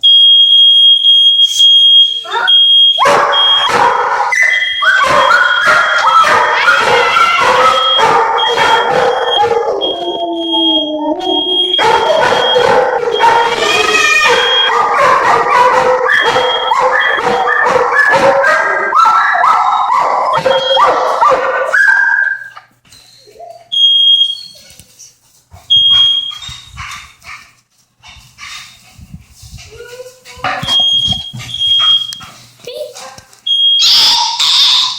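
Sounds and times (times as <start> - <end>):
smoke alarm beeping: 0.0 - 24.8, 25.7 - 26.7, 30.6 - 32.4, 33.4 - 34.9
dogs barking: 2.3 - 22.6, 33.8 - 34.9
dogs howling: 2.4 - 22.6, 33.8 - 34.9.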